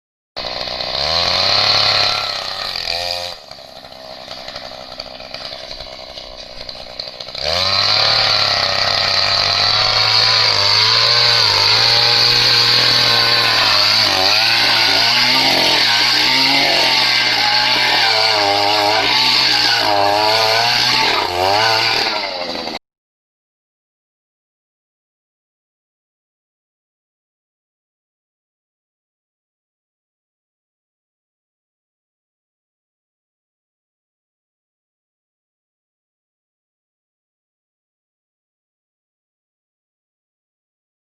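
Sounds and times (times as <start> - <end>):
two-stroke auger engine running: 0.4 - 22.8.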